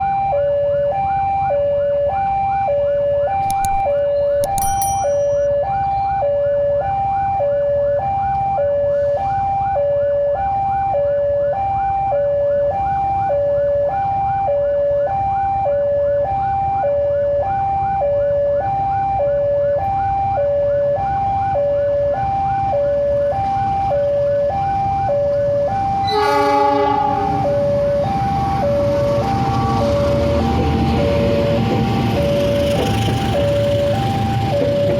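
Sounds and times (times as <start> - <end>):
train horn: 26.0 - 27.8.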